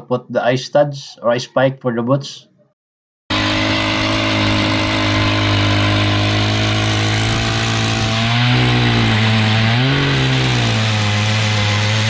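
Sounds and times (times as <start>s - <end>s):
small gas engine revving: 3.3s - 12.0s.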